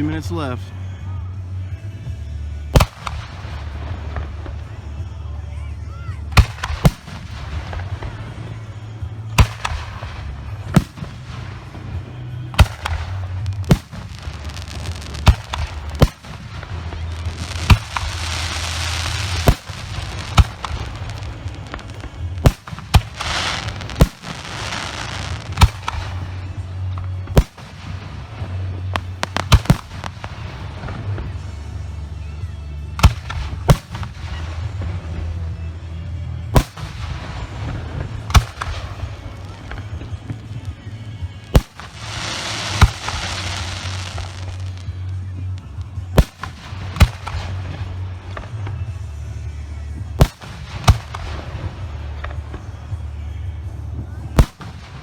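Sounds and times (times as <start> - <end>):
firework shells bursting: 6.4 - 31.8, 36.5 - 40.7, 41.5 - 48.9
firework hissing: 9.4 - 26.5, 27.3 - 31.6, 41.5 - 45.0.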